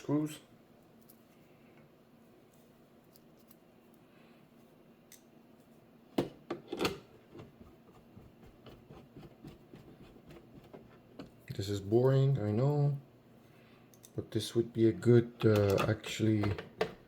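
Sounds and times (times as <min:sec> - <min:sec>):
plastic knocks and clicks: 0:15.6 - 0:17.0.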